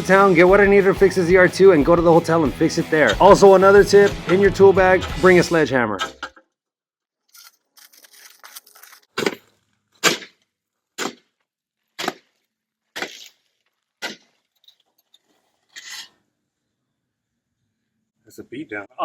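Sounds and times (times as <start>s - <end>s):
sledgehammer blows: 0.1s - 6.3s.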